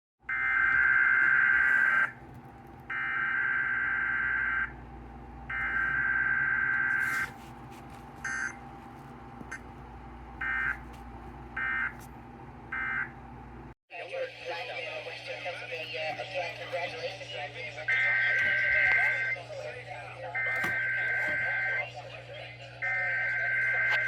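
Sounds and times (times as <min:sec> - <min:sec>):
faint broadcast hum and hiss: 0:13.9 - 0:24.0.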